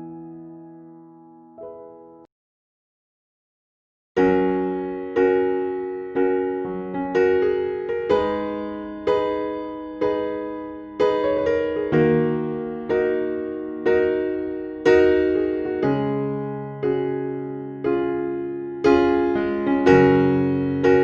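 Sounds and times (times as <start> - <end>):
piano chords: 0.0 - 2.3, 4.2 - 21.0.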